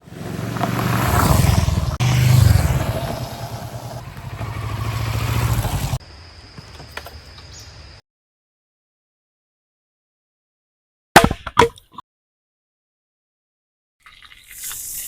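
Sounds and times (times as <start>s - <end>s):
motorcycle engine revving: 0.0s - 6.0s.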